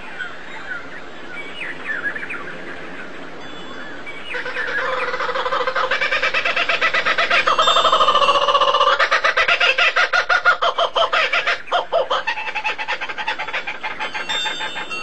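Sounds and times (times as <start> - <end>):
bird calling rapidly: 4.3 - 15.0.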